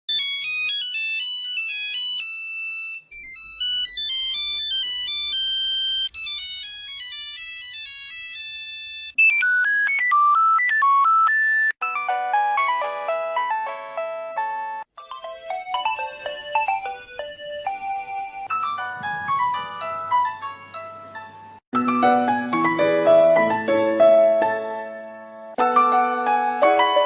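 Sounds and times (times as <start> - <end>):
mobile phone ringtones: 0.1 - 11.8, 15.0 - 21.1.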